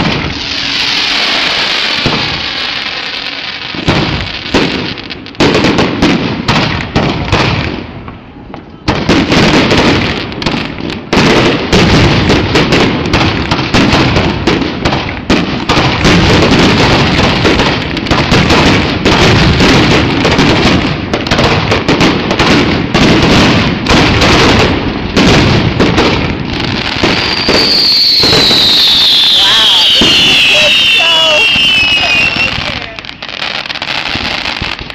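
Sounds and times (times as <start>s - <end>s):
falling firework whistle: 0.0s - 5.0s, 26.5s - 34.9s
fireworks bangs and crackles: 0.0s - 34.9s.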